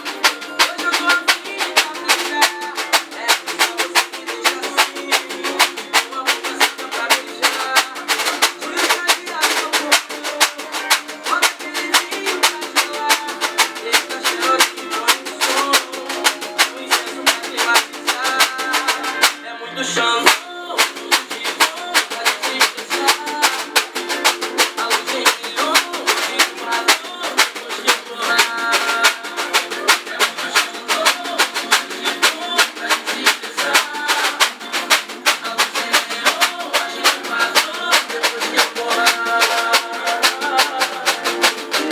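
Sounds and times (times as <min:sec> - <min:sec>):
scraper instrument rhythmic scrapes: 0:00.0 - 0:19.5, 0:20.2 - 0:41.9
person singing: 0:00.0 - 0:41.9.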